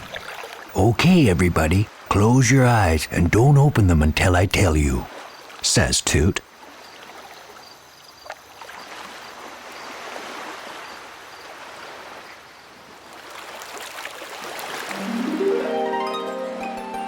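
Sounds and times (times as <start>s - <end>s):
water washing like waves: 0.0s - 0.7s, 6.5s - 15.0s
rising chime-like music notes: 14.9s - 17.0s.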